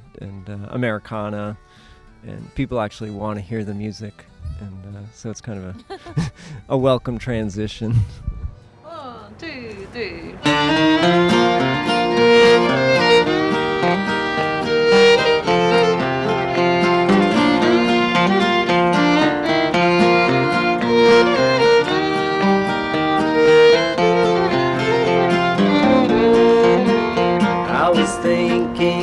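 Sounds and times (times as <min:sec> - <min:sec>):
fiddle melody: 0:09.4 - 0:29.0
acoustic guitar accompaniment: 0:09.7 - 0:29.0.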